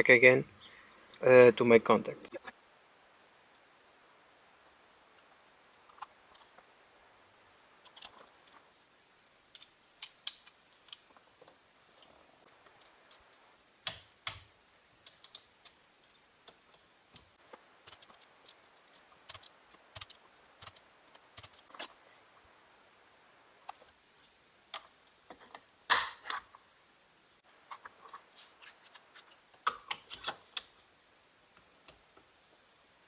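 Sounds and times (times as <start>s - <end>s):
small parts clicking and tapping: 7.8s - 8.7s, 9.4s - 22.0s, 27.7s - 30.8s.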